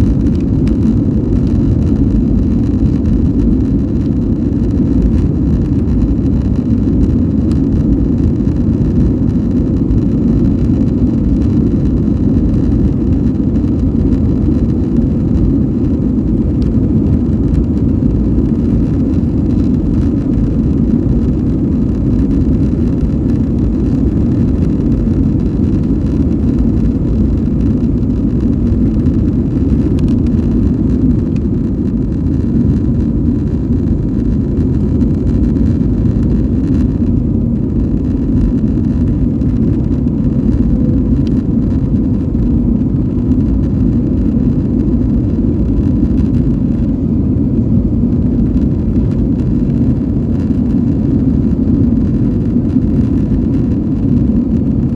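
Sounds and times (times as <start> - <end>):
airplane engine roar: 0.0 - 54.9
faint steady hum: 0.0 - 54.9.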